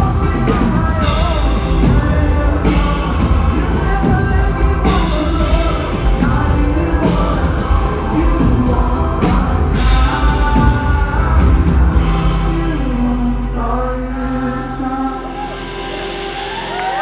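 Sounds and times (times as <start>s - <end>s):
strong band hits: 0.0s - 13.1s
live band playing: 0.0s - 17.0s
person singing: 0.0s - 17.0s.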